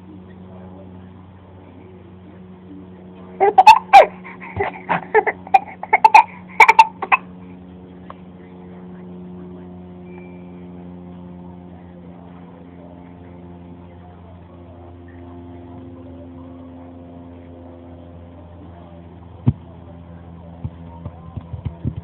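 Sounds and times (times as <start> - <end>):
steady low hum: 0.0 - 22.0
child fake-coughing: 3.4 - 7.3.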